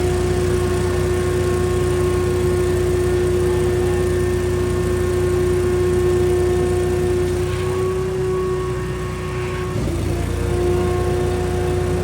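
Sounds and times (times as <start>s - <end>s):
industrial vacuum running: 0.0s - 12.0s.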